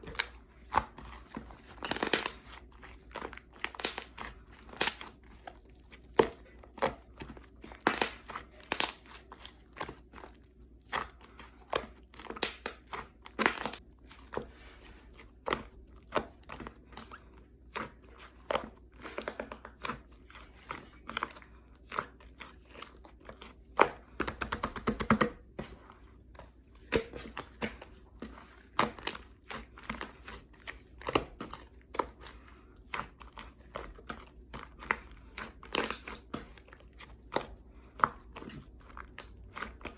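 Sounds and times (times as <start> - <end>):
slime popping and crackling: 12.3 - 13.8.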